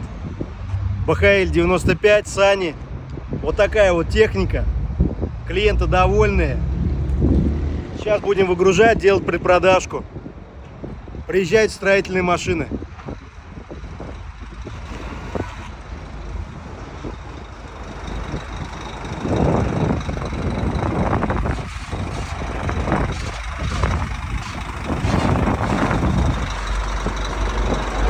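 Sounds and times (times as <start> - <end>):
heavy diesel engine running: 0.1 - 2.1, 13.2 - 28.0
air noise: 16.3 - 28.0.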